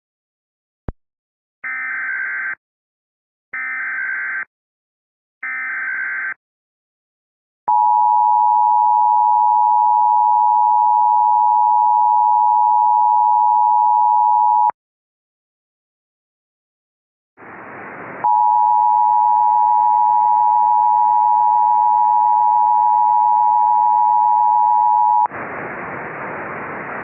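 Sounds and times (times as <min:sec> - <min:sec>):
two-tone attention signal: 0:18.2 - 0:25.3.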